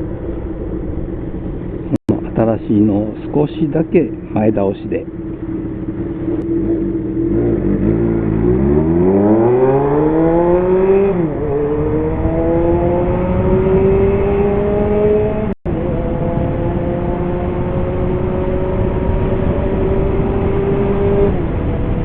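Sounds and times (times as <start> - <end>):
motorcycle engine accelerating: 0.0 - 22.0.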